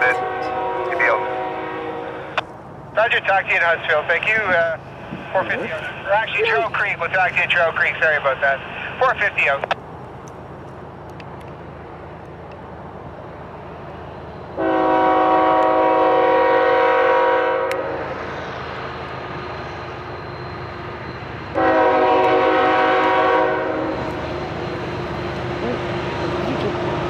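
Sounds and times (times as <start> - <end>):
train air horn blasts: 0.0 - 2.4, 14.6 - 18.1, 21.6 - 24.1
low train rumble: 0.0 - 27.0.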